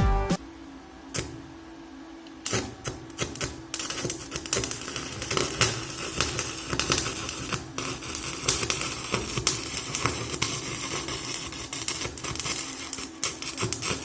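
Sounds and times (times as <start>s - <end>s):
welding arc crackling: 2.4s - 14.0s.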